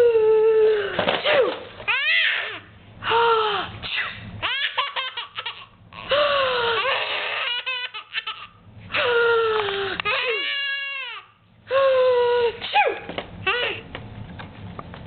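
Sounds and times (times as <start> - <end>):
baby belly-laughing: 3.9 - 9.1.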